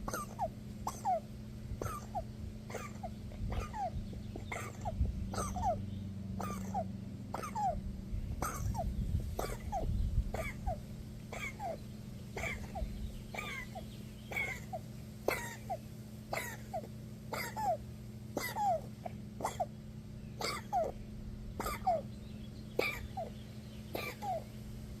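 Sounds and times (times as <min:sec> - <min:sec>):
steady low hum: 0:00.0 - 0:25.0
animal wheezing breaths: 0:01.8 - 0:05.8, 0:06.4 - 0:11.8.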